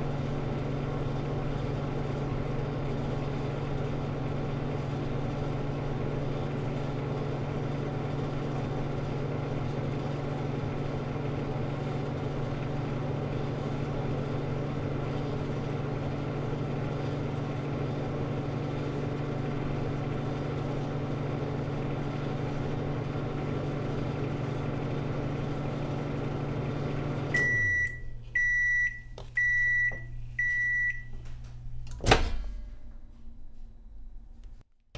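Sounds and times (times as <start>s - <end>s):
microwave oven humming: 0.0s - 34.6s
microwave beeps: 27.3s - 31.2s.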